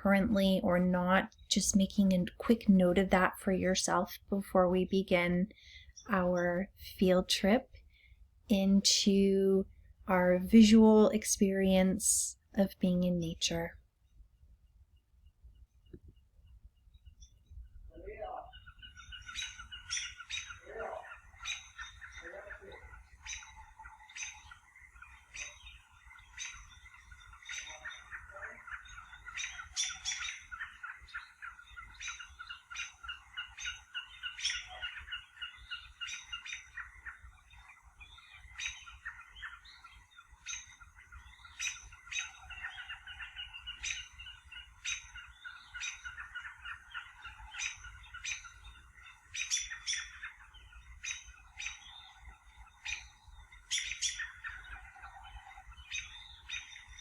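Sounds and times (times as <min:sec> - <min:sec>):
birds chirping and calling: 0:16.4 - 0:57.0.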